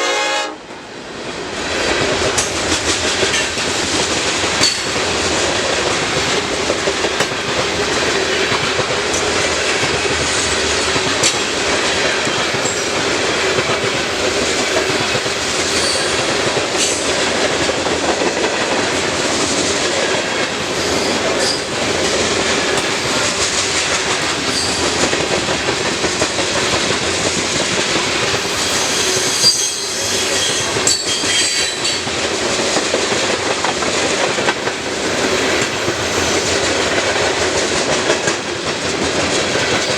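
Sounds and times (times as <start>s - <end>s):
steel wheels rumbling on rail: 0.0s - 39.9s
clicks over rail joints: 2.4s - 14.0s, 21.3s - 28.4s
high-pitched wheel squeals: 28.6s - 32.0s.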